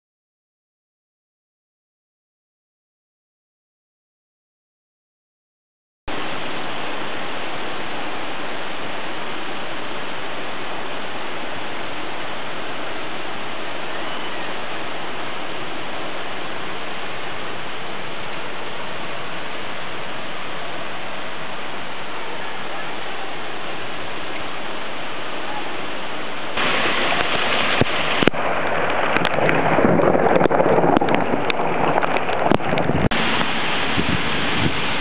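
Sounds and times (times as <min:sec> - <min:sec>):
heavy rain pouring: 0:06.1 - 0:35.0.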